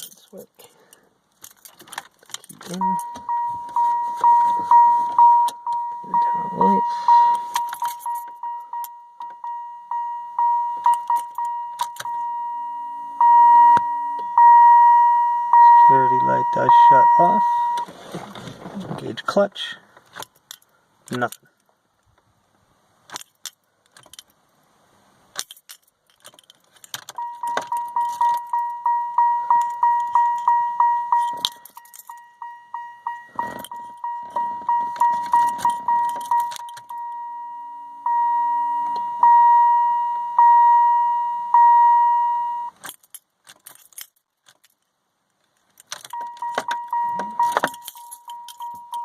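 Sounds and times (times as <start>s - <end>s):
keys jangling: 1.3s - 3.5s, 7.3s - 8.9s, 23.1s - 24.3s, 25.3s - 28.8s, 29.5s - 32.3s, 33.3s - 37.1s, 42.8s - 49.0s
dashboard warning chime dinging: 1.5s - 17.9s, 27.1s - 42.8s, 45.9s - 49.0s.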